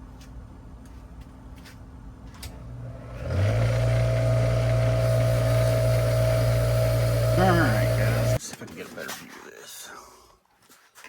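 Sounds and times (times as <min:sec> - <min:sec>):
electric grinding tool spinning: 0:02.8 - 0:08.4.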